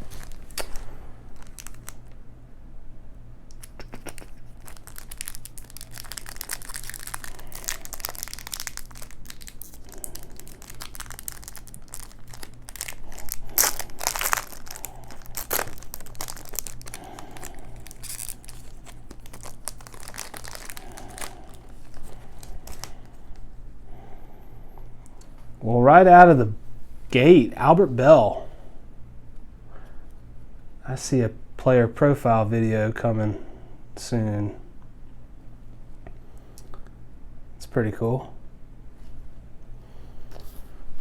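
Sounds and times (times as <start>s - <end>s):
wrapper tearing and crinkling: 0.0s - 2.1s, 3.5s - 23.1s.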